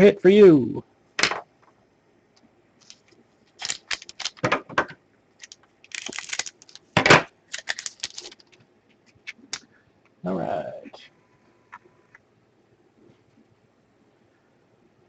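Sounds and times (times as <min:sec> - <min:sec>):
trading cards and wrappers rustling: 0:02.8 - 0:04.5, 0:05.4 - 0:09.7.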